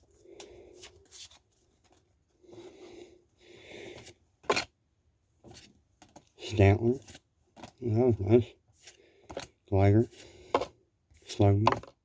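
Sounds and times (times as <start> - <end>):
soft breaths: 0.0 - 1.3, 2.3 - 4.2, 8.3 - 10.8.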